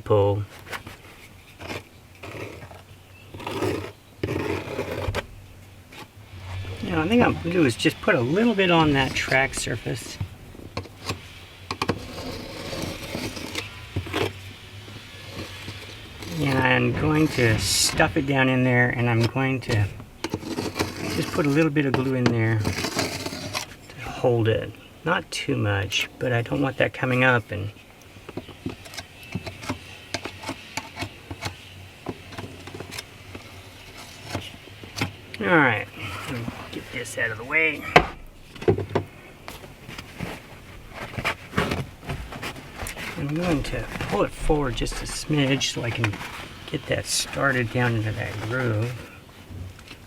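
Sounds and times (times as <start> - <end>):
faint steady hum: 0.0 - 50.0
scrape or squeak: 12.0 - 14.4.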